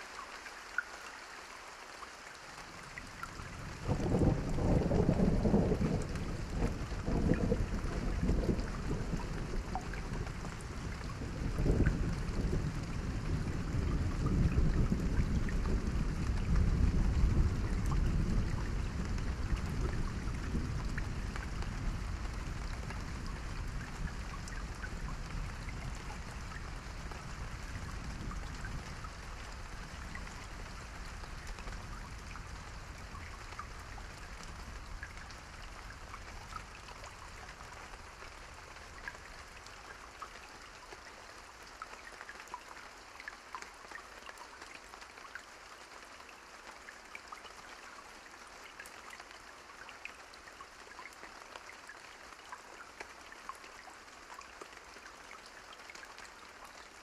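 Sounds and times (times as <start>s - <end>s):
individual raindrops: 0.0s - 57.0s
steady rain: 0.0s - 57.0s
low thunder rumble: 3.5s - 33.4s.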